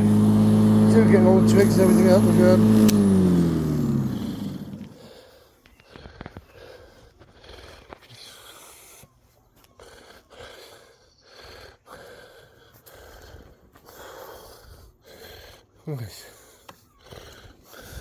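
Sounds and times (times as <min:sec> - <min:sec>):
lawnmower motor winding down: 0:00.0 - 0:05.2
man breathing heavily: 0:04.9 - 0:18.0.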